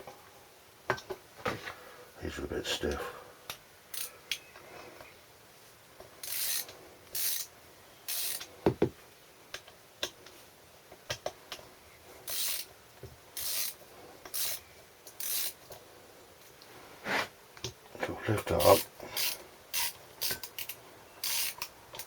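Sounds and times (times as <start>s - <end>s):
ratchet wrench clicking: 3.9s - 4.1s, 6.2s - 7.5s, 8.1s - 8.5s, 12.3s - 12.7s, 13.4s - 15.6s, 18.7s - 22.0s.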